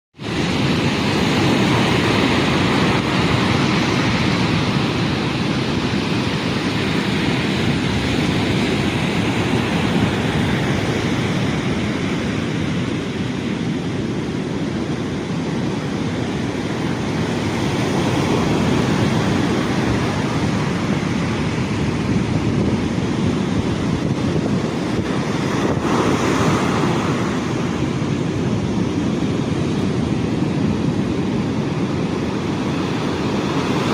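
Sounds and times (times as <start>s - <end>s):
heavy sea waves washing in: 0.2s - 33.9s
wind on microphone: 0.2s - 33.9s.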